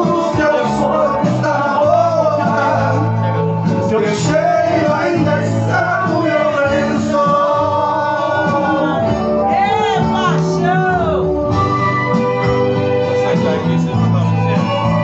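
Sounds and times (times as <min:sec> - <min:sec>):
man singing: 0:00.0 - 0:09.4
instrumental accompaniment: 0:00.0 - 0:15.0.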